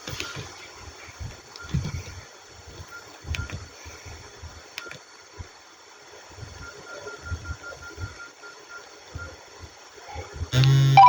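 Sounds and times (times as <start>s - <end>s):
high beep: 10.6s - 11.0s.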